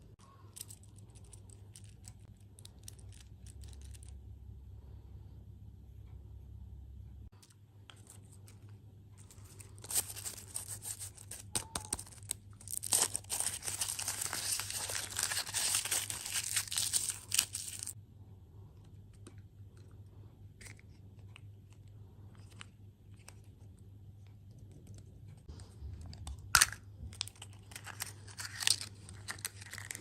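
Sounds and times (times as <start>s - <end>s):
packaging crinkling and tearing: 9.2s - 18.0s, 26.5s - 30.0s.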